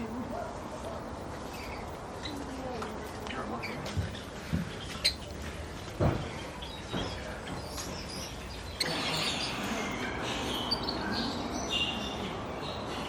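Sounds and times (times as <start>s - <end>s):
birds calling and chirping: 6.2s - 13.0s.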